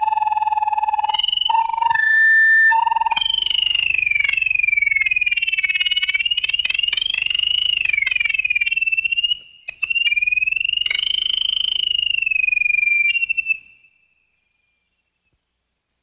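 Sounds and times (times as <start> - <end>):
pulsing trilling electronic tone: 0.0 - 5.3.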